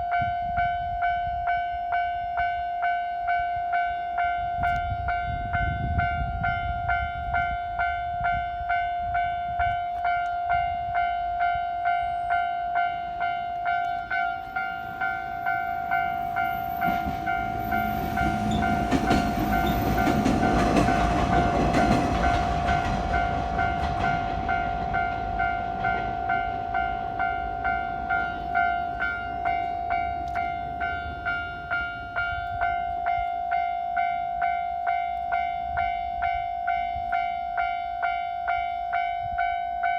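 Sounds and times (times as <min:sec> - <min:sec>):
level crossing warning bell: 0:00.0 - 0:39.9
train passing: 0:00.0 - 0:39.9
train wheel clacks: 0:13.6 - 0:32.6.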